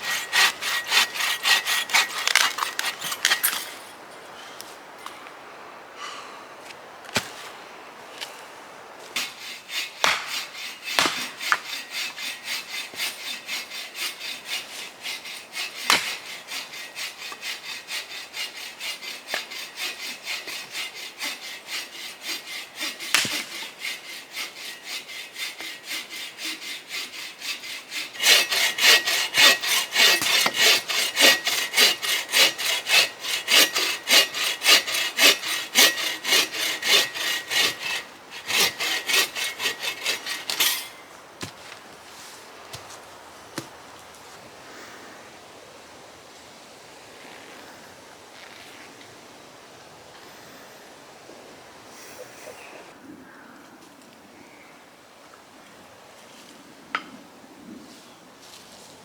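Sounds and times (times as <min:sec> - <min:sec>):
hand saw cutting firewood: 0:00.0 - 0:03.9, 0:09.1 - 0:43.0.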